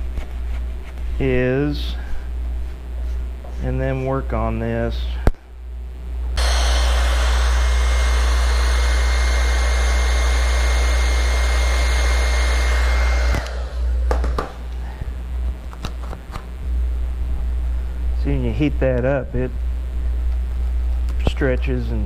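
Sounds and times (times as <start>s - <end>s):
heat gun blowing with high whine: 6.4s - 14.4s
fan winding down: 6.4s - 14.8s.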